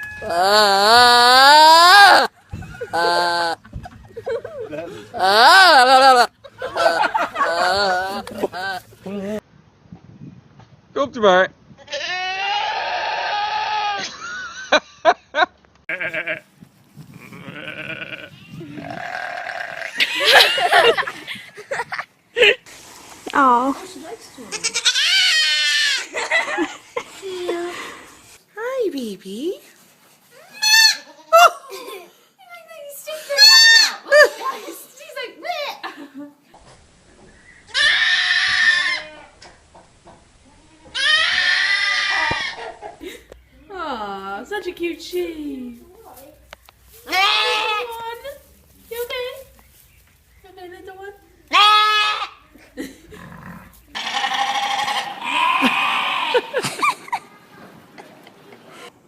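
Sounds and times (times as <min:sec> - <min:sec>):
livestock bleating: 0:00.1 - 0:02.3, 0:02.9 - 0:03.6, 0:05.2 - 0:06.3, 0:11.9 - 0:14.0, 0:15.9 - 0:16.5, 0:17.2 - 0:20.0, 0:24.5 - 0:26.0, 0:37.8 - 0:39.3, 0:40.9 - 0:42.6, 0:47.1 - 0:48.0, 0:51.5 - 0:52.4, 0:53.2 - 0:56.6.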